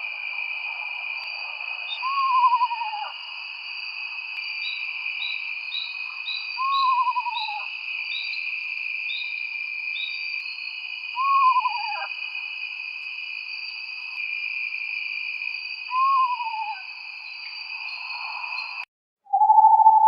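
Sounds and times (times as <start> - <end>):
high-pitched insect chorus: 0.0 - 18.9
owl quavering whinny call: 2.0 - 3.1, 11.2 - 12.1.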